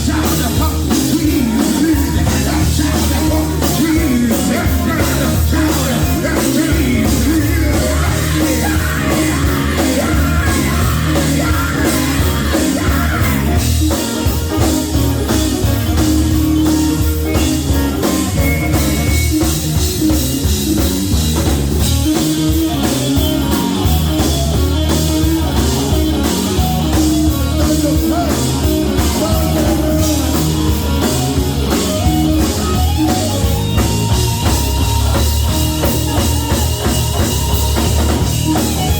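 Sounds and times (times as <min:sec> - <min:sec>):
people singing: 0:00.0 - 0:14.6, 0:25.3 - 0:31.5
gospel band playing: 0:00.0 - 0:38.9.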